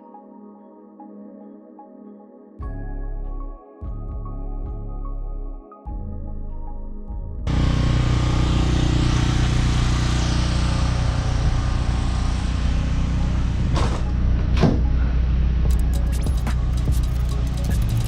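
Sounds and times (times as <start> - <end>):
engine droning: 7.5 - 18.0.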